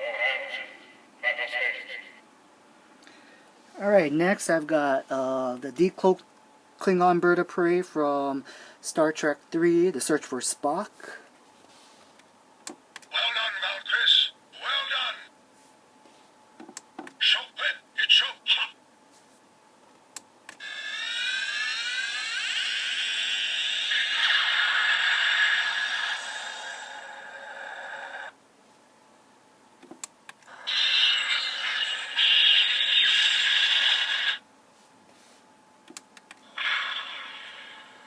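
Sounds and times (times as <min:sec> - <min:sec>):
toy electronic sound effects: 0:20.6 - 0:28.1, 0:30.6 - 0:34.4, 0:36.5 - 0:38.0.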